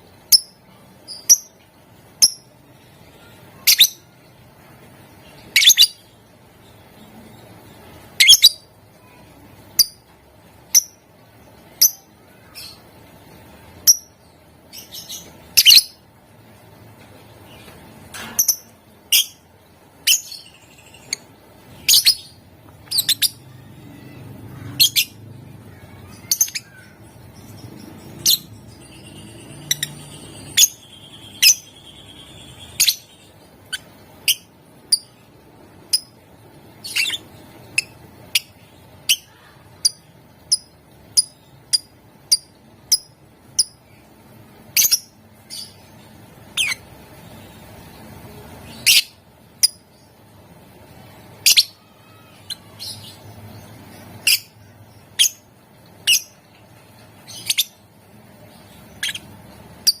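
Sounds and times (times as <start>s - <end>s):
bird high-pitched chirps: 0.2s - 1.6s, 2.2s - 4.2s, 5.3s - 6.2s, 6.8s - 10.1s, 13.7s - 16.0s, 17.5s - 35.3s, 36.8s - 44.1s, 44.7s - 45.9s, 46.5s - 48.0s, 48.6s - 50.2s, 51.4s - 56.5s, 57.1s - 57.9s, 58.5s - 60.0s.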